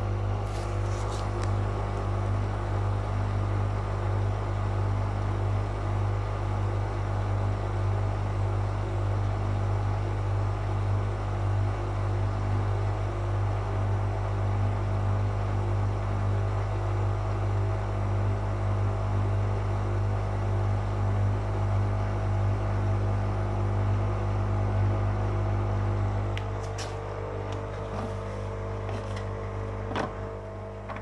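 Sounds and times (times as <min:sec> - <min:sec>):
washing machine drum turning: 0:26.8 - 0:31.0.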